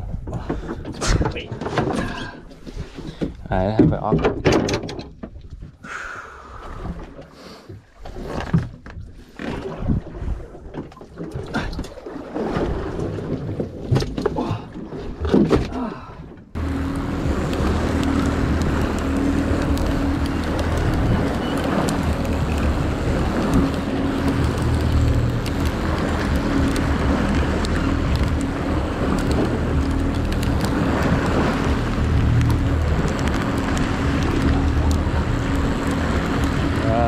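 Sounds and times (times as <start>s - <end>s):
wind: 0.0s - 37.0s
boat engine humming: 14.5s - 37.0s
water rushing: 16.6s - 37.0s.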